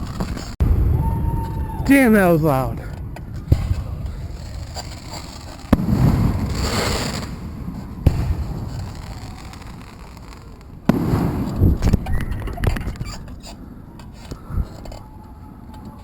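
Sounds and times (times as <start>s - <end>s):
fireworks bangs with crackling: 0.0s - 13.4s.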